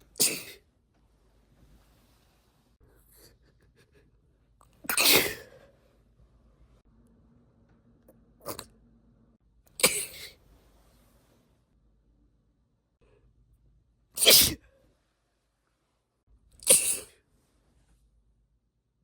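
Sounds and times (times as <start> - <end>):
woman sneezing: 0.2 - 0.6, 4.8 - 5.6, 9.8 - 10.4, 14.2 - 14.6, 16.6 - 17.2.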